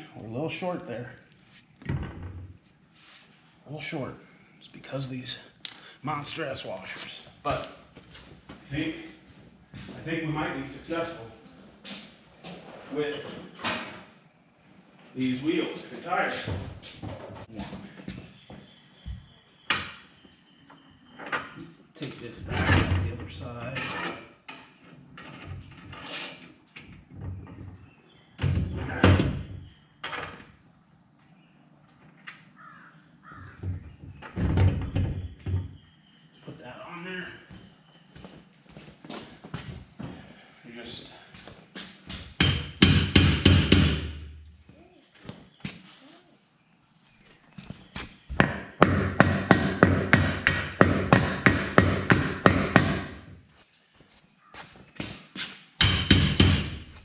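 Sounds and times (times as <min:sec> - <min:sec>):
hammer striking metal: 0:05.6 - 0:06.0
cart wheel parts knocking and clattering: 0:55.8 - 0:57.0.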